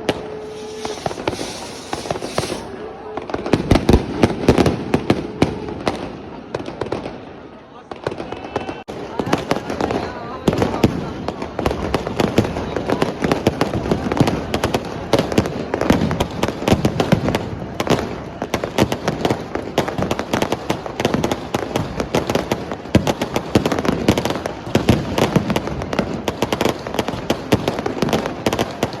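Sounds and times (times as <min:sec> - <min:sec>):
firecrackers cracking and popping: 0:00.0 - 0:02.8, 0:09.0 - 0:29.0.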